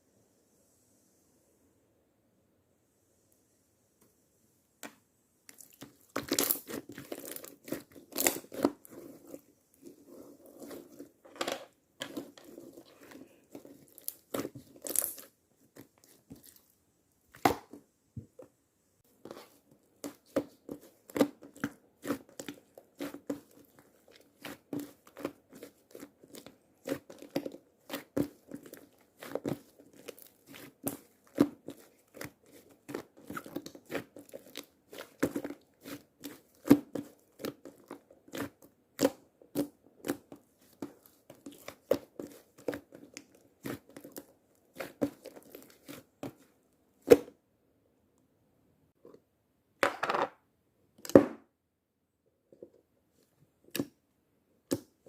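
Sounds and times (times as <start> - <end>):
slime squished by hand: 5.5 - 10.0, 19.2 - 47.2.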